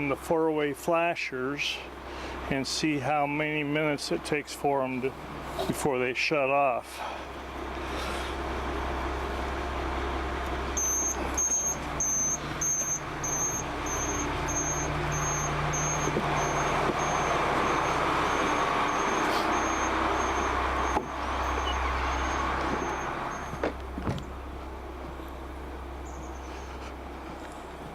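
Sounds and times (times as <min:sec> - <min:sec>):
vehicle engine idling: 0:00.0 - 0:27.9
high-pitched hazard beeps: 0:10.8 - 0:23.5.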